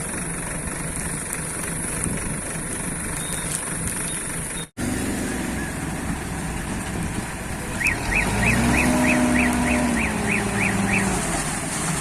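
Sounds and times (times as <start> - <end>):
diesel engine revving: 3.6 - 12.0.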